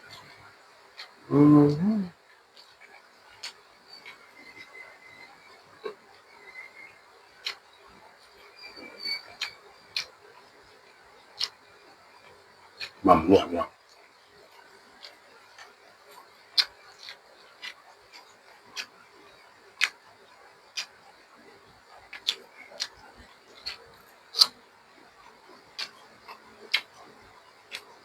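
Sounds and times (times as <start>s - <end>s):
mouth clicks and smacks chewing: 0.1s - 1.8s, 2.5s - 4.8s, 7.3s - 10.2s, 11.3s - 11.6s, 12.2s - 21.1s, 21.9s - 28.0s.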